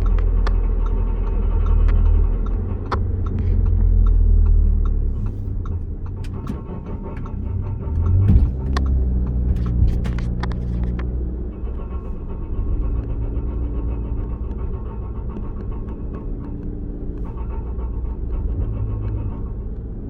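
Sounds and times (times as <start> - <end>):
car engine low rumble: 0.0 - 20.0
clicks and knocks: 5.5 - 11.1.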